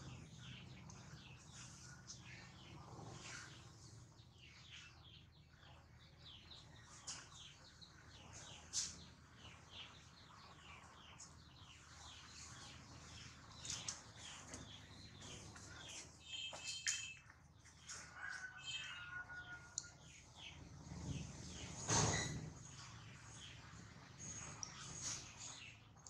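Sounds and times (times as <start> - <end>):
faint high chirping: 14.4 - 17.3.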